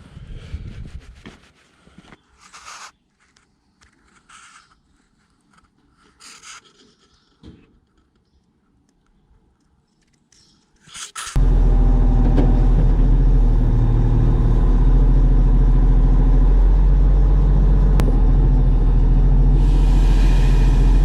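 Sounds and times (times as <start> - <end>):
skid steer engine running: 11.4 - 21.0.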